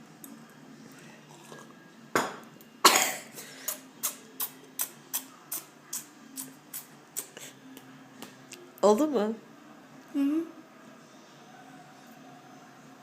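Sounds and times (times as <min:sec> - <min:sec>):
child coughing: 0:02.8 - 0:03.4.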